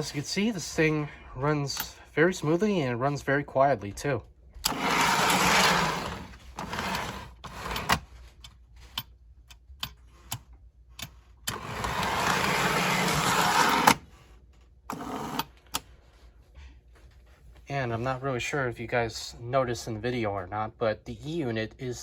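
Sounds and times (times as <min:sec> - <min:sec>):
toy train motor and wheels: 0:04.6 - 0:08.0, 0:11.5 - 0:14.0.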